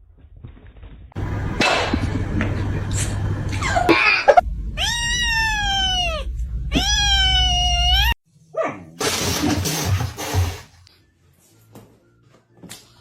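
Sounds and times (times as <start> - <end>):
steady low hum: 1.2 - 8.1
cat meowing: 4.8 - 8.2.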